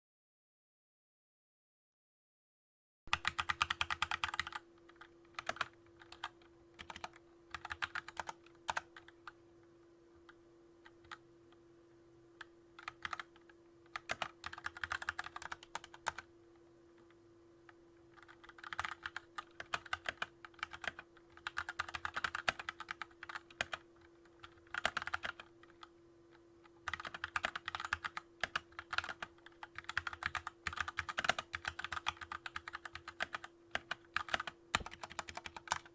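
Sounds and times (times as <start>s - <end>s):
mechanical keyboard typing: 3.1s - 9.4s, 10.3s - 11.2s, 12.4s - 16.3s, 18.1s - 25.9s, 26.8s - 35.9s.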